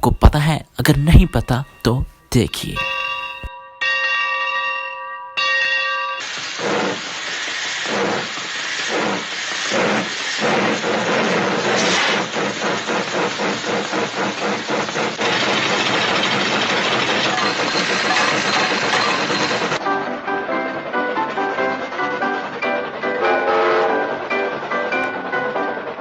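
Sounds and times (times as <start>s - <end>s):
steam locomotive chugging: 6.2s - 26.0s.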